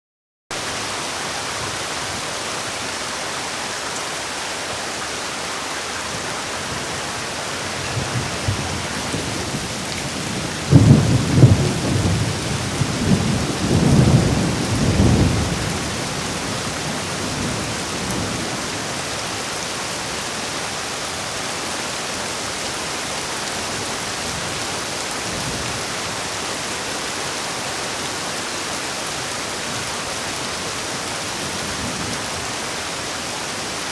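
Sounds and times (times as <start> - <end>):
heavy rain: 0.5 - 33.9
thunder rumbling: 7.6 - 19.0.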